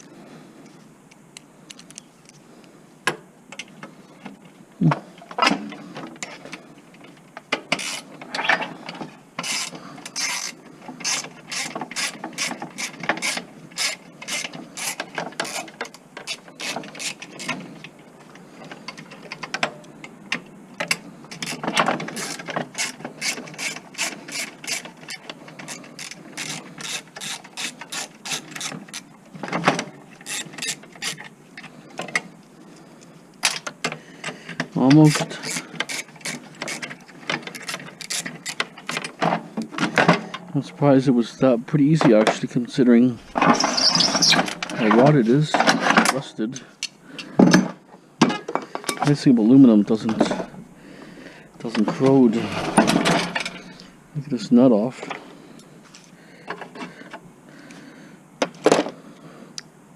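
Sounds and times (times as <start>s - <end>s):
ratchet wrench clicking: 7.8s - 8.0s, 9.4s - 15.7s.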